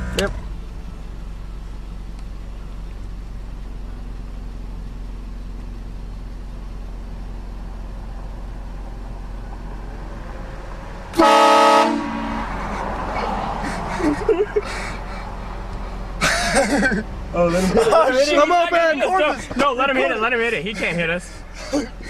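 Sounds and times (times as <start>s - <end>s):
vehicle running hum: 0.0s - 22.0s
train horn blast: 11.1s - 12.6s.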